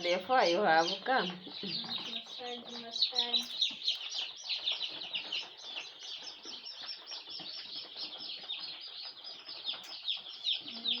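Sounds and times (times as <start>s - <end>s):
chicks peeping: 0.0s - 11.0s.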